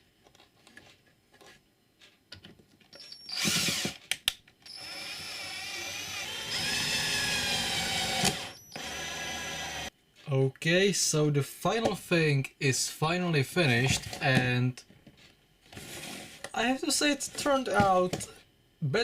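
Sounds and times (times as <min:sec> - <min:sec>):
power drill running: 0:03.0 - 0:04.0, 0:04.7 - 0:09.9.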